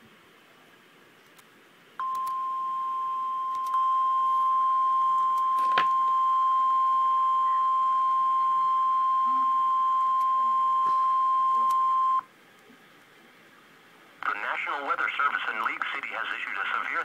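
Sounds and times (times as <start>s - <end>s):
steady warning beep: 2.0s - 12.3s.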